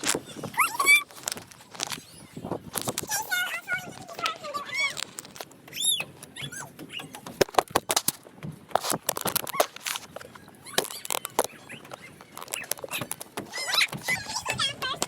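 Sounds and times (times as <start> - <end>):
child squealing: 0.6 - 1.1.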